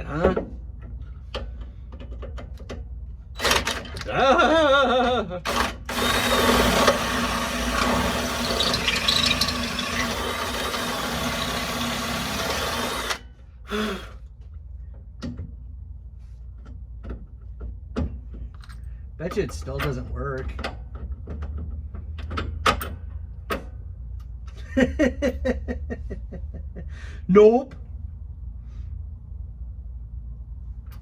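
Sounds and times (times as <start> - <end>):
power tool motor running: 3.4 - 3.8, 5.5 - 14.2.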